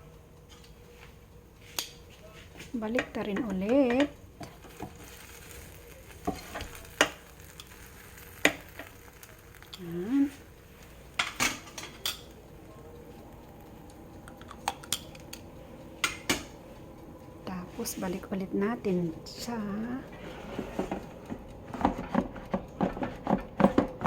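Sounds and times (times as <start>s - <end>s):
meat sizzling: 2.7s - 16.8s
metal utensil clinking on pan: 11.2s - 12.3s.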